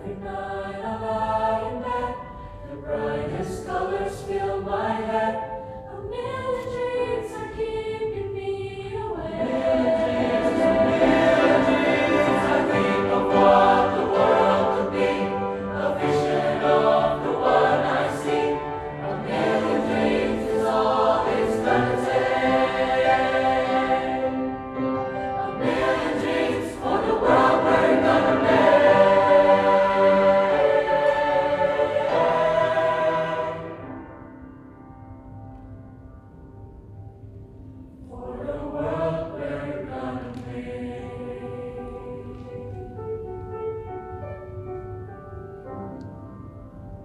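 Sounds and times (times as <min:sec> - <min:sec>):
choir singing in parts: 0:00.0 - 0:34.3, 0:38.0 - 0:43.2.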